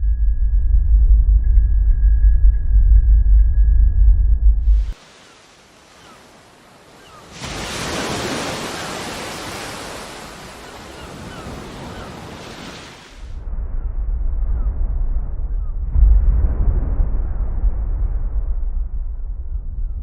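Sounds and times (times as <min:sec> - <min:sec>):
muffled low rumble: 0:00.0 - 0:05.0, 0:13.4 - 0:20.0
rushing wind: 0:04.7 - 0:20.0.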